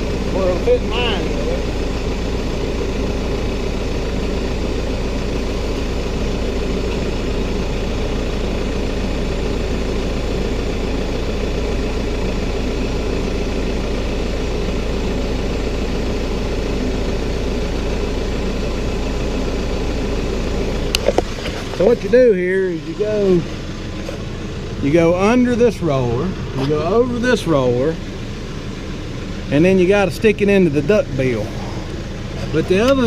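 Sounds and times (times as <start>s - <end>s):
tractor engine idling: 0.0s - 33.0s.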